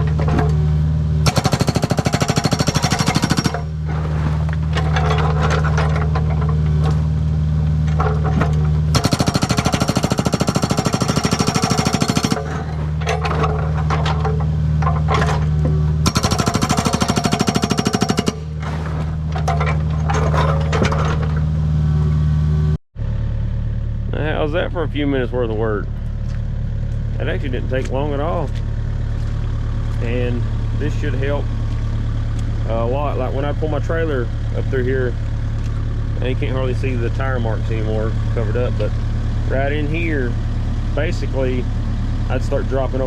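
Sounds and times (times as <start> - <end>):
diesel engine running: 0.0 - 43.0
hydraulic breaker pounding rock: 1.2 - 7.1, 7.8 - 21.4.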